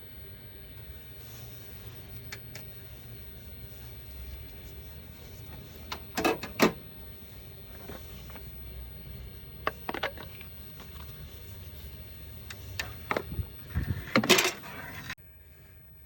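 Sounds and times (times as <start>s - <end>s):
low steady rumble: 0.0s - 16.0s
metal tools clinking: 14.1s - 14.8s.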